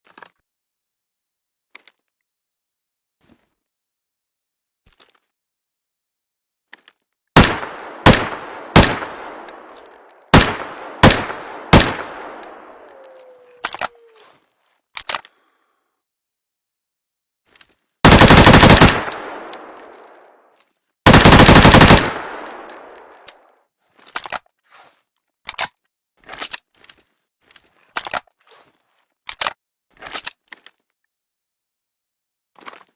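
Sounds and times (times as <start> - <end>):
submachine gun single shots: 7.4 - 9.5, 10.3 - 12.8, 18.1 - 19.8, 21.1 - 23.1
submachine gun full-auto bursts: 18.0 - 19.5, 21.1 - 22.7.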